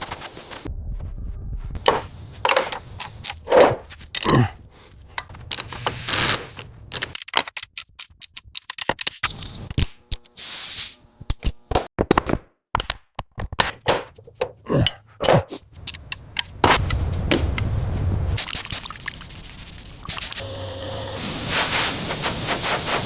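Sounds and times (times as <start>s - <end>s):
tools clicking and clanking on metal: 1.8s - 4.4s, 6.6s - 10.2s, 12.8s - 16.6s
short hissing rushes: 21.2s - 23.0s.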